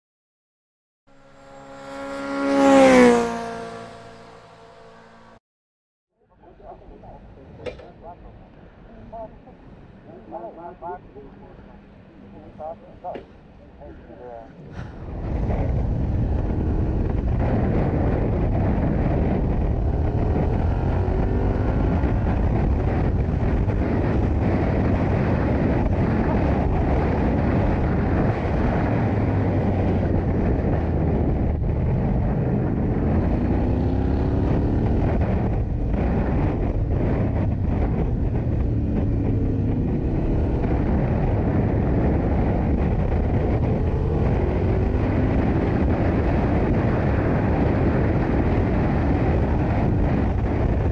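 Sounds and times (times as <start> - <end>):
motorcycle engine accelerating: 1.1 - 5.4, 15.0 - 50.9.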